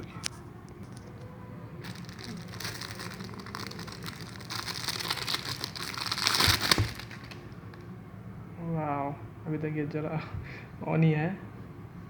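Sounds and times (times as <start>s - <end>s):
plastic wrapping crinkling: 1.8s - 7.9s.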